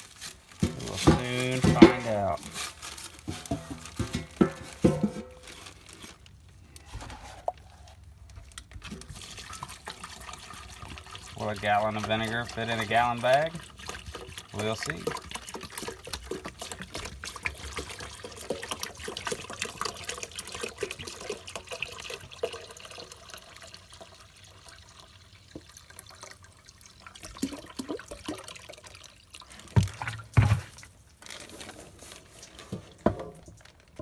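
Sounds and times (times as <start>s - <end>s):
plastic bag rustling: 0.0s - 9.8s, 29.5s - 34.0s
liquid pouring into plastic bag: 0.0s - 34.0s.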